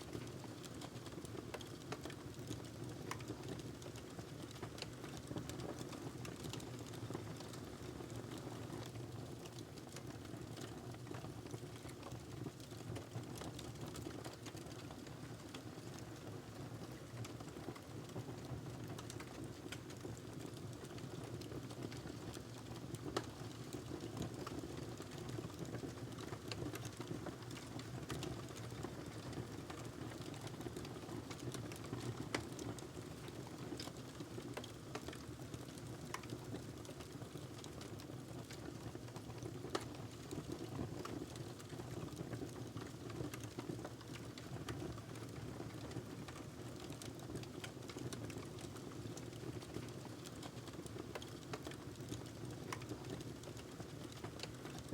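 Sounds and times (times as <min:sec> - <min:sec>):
wood fire crackling: 0:00.0 - 0:54.9
low rumble of flames: 0:17.2 - 0:54.9.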